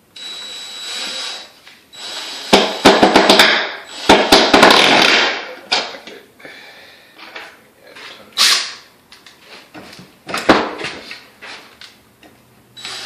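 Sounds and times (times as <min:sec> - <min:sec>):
impact driver hammering: 0:02.5 - 0:05.4
impact driver motor whine: 0:12.8 - 0:13.0.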